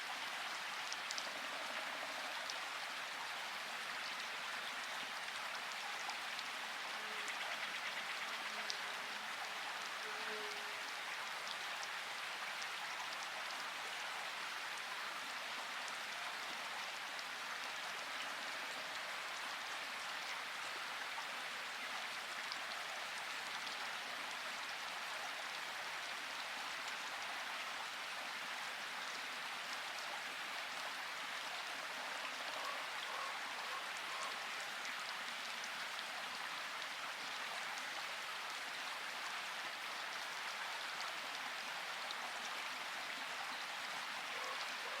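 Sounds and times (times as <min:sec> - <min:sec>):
rain pattering on leaves: 0:00.0 - 0:27.8.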